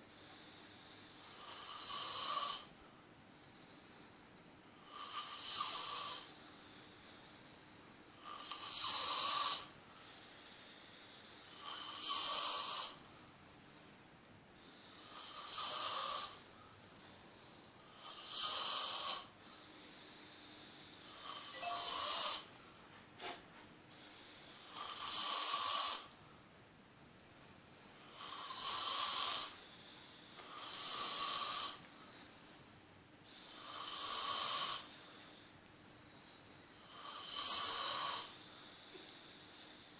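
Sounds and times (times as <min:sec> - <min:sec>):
quiet breathing: 0:00.0 - 0:39.9
person snoring heavily: 0:01.2 - 0:02.7, 0:04.8 - 0:06.3, 0:08.2 - 0:09.7, 0:11.4 - 0:13.0, 0:14.8 - 0:16.4, 0:18.0 - 0:19.3, 0:21.1 - 0:22.5, 0:24.6 - 0:26.1, 0:28.1 - 0:29.6, 0:30.5 - 0:31.8, 0:33.3 - 0:34.9, 0:36.8 - 0:38.4.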